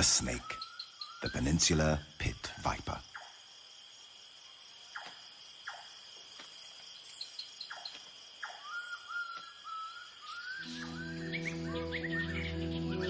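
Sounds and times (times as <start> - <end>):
crickets trilling: 0.0 - 13.0
soft rising melody: 10.6 - 13.0.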